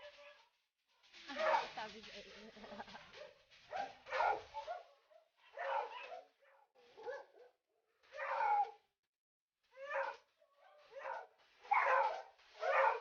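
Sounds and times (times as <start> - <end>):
dog barking short calls: 3.2 - 4.9, 5.5 - 6.4, 10.8 - 13.0.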